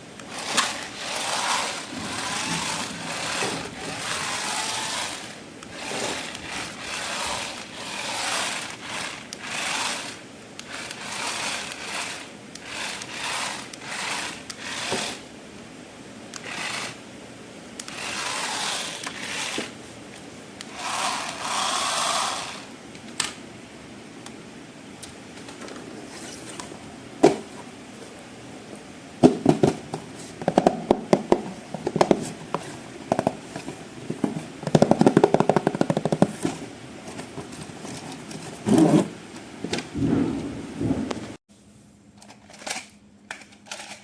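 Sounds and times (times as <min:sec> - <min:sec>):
toy electric motor whirring: 0:00.3 - 0:15.3, 0:16.4 - 0:17.0, 0:17.8 - 0:19.8, 0:20.6 - 0:22.7.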